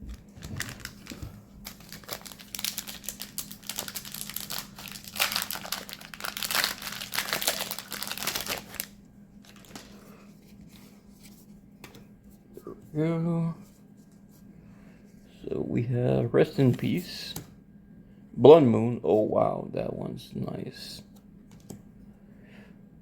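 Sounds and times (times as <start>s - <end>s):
foil wrapper tearing and crinkling: 0.2s - 10.0s.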